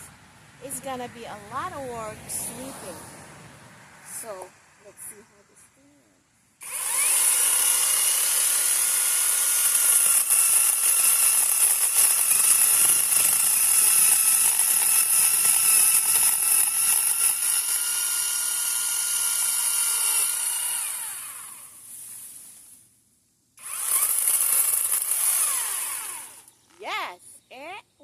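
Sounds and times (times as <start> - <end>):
electric chainsaw cutting wood: 6.6 - 22.3, 23.6 - 26.6.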